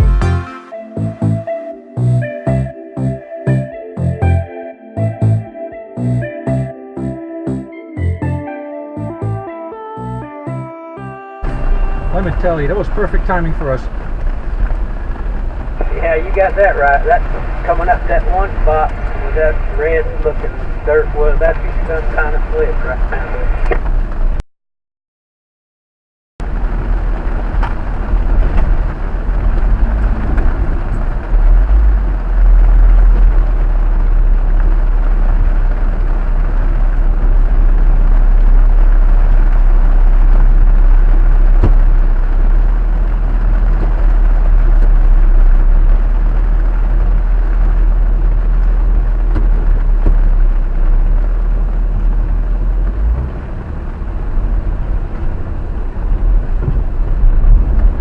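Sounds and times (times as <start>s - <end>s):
engine and tyre rumble: 11.4s - 24.4s, 26.4s - 58.0s.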